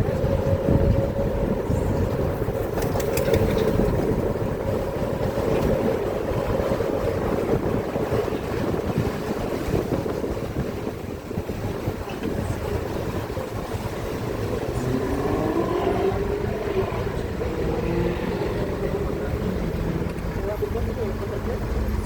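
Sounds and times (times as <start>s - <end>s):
vehicle rumble: 0.0s - 22.0s
wind on microphone: 0.0s - 22.0s.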